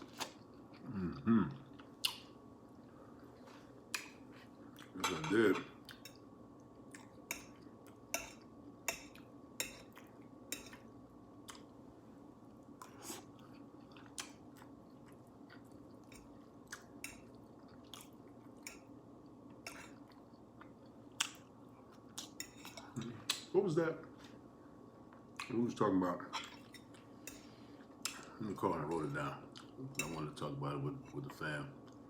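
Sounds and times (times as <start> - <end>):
faint steady hum: 0.0 - 32.0
person chewing: 1.6 - 5.0, 5.8 - 11.8, 12.8 - 23.5.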